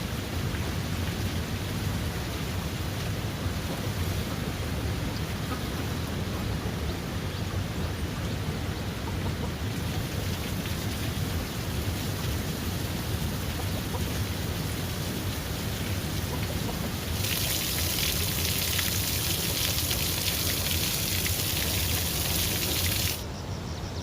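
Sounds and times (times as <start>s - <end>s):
steady rain falling: 0.0s - 23.2s.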